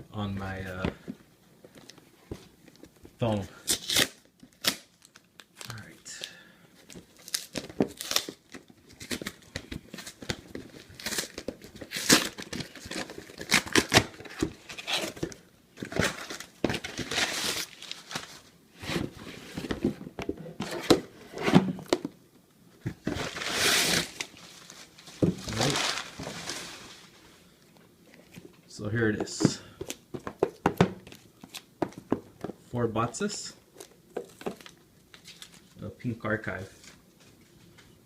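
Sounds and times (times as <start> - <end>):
packaging tearing and crinkling: 3.6 - 6.3, 6.9 - 18.4, 23.1 - 27.2
packaging rustle: 23.0 - 27.3.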